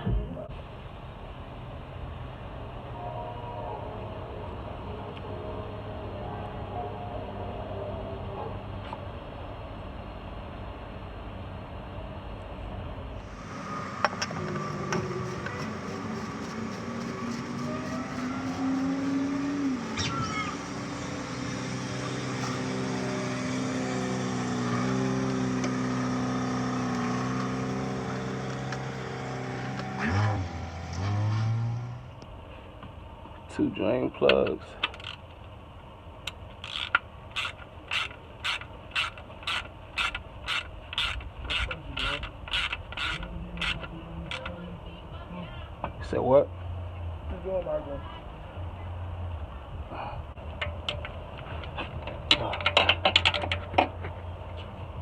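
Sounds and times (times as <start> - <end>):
motor humming: 13.3 - 32.2
ratchet wrench clicking: 36.3 - 44.5.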